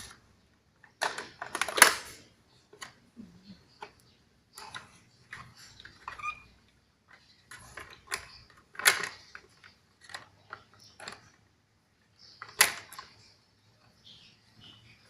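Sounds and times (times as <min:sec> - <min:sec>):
hard objects clicking and knocking: 0:00.0 - 0:03.1, 0:03.7 - 0:11.5, 0:12.3 - 0:13.3.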